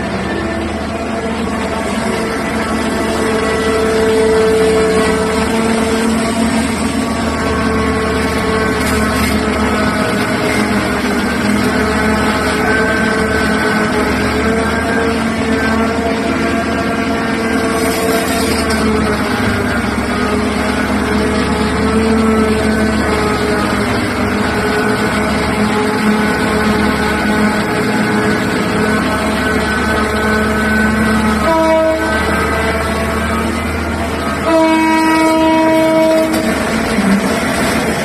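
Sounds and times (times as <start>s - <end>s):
diesel engine running steadily: 0.0s - 38.0s.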